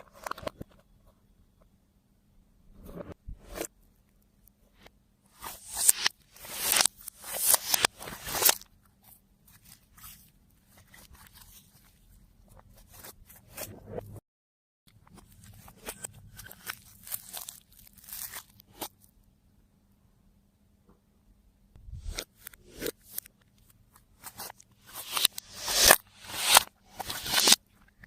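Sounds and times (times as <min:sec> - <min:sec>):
slime crackling and crunching: 0:16.4 - 0:19.0.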